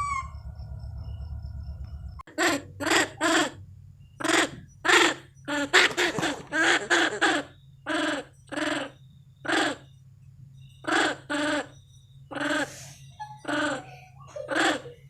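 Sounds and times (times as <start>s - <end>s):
monkey calls: 0.0s - 0.4s, 2.3s - 3.6s, 4.2s - 9.9s, 10.8s - 15.0s
steady low hum: 0.0s - 15.0s.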